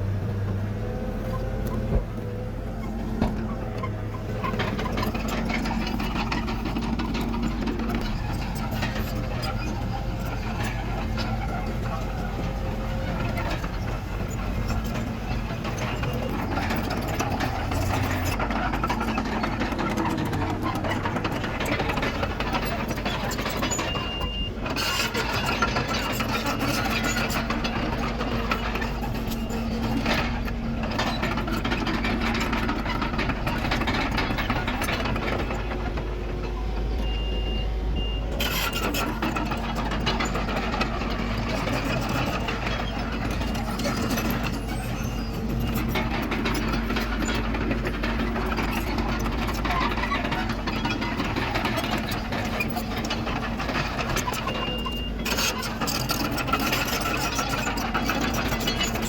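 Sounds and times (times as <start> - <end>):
heavy diesel machinery running: 0.0 - 59.0
clicks and clatter: 12.9 - 36.1, 38.4 - 59.0.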